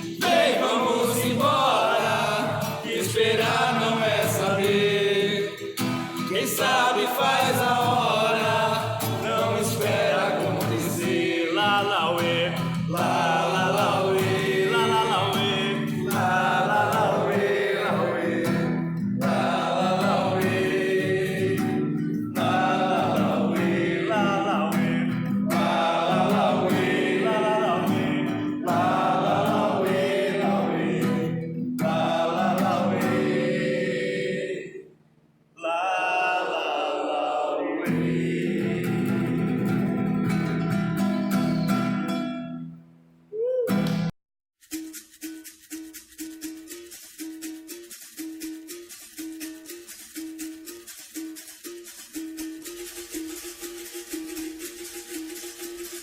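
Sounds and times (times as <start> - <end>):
people singing: 0.0 - 35.0, 35.6 - 40.4
acoustic guitar: 0.0 - 56.0.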